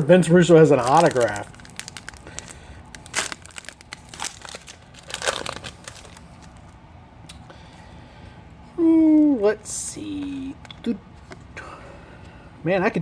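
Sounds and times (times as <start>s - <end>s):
card wrapper crinkling: 0.4s - 6.8s.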